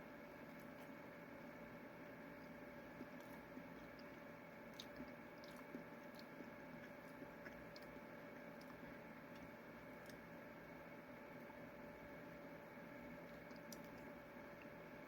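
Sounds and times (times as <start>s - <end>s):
steady low hum: 0.0s - 15.0s
chewing with wet mouth clicks: 2.4s - 10.4s, 13.2s - 14.9s.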